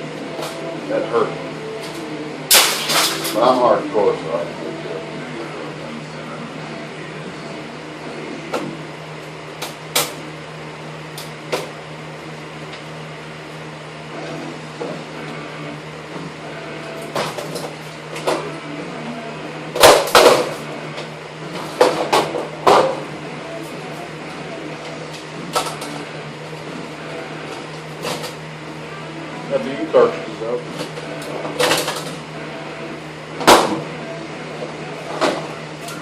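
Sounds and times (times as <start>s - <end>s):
steady low hum: 0.0s - 36.0s.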